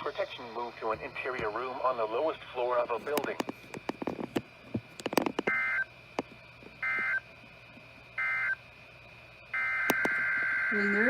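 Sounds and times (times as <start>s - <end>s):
low steady radio hum: 0.0s - 11.0s
screechy two-tone data bursts: 5.0s - 6.0s, 6.8s - 7.3s, 8.1s - 8.7s, 9.4s - 11.0s.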